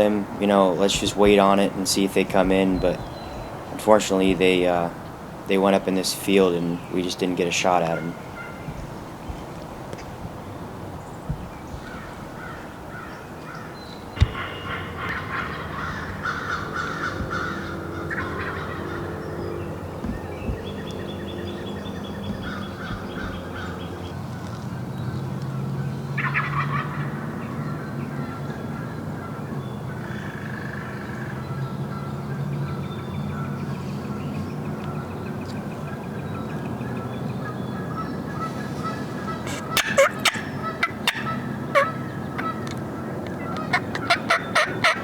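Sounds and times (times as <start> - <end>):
turkeys gobbling: 11.7 - 24.1, 26.2 - 27.2, 38.4 - 42.7, 43.4 - 45.0.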